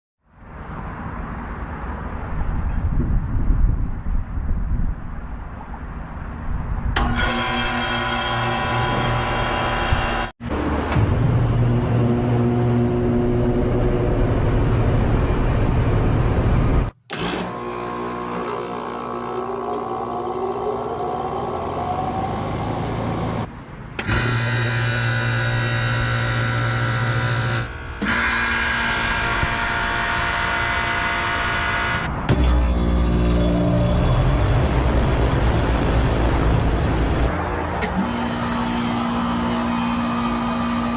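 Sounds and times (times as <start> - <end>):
fan spinning up whine: 6.9 - 40.9
hvac motor hum and whir: 7.0 - 34.8, 37.0 - 40.9.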